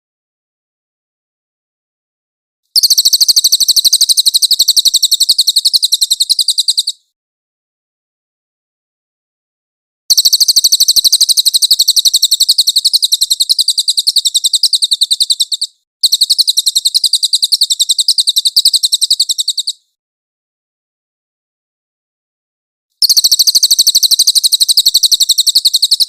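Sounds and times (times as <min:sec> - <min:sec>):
songbird fast trill: 0:02.8 - 0:07.1, 0:10.1 - 0:19.9, 0:23.0 - 0:26.0.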